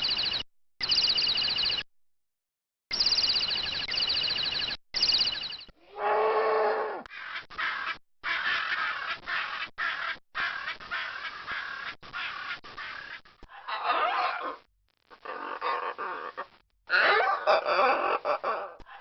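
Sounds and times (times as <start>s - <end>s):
high bird trill: 2.9s - 5.7s
parrot squawking: 7.2s - 14.6s.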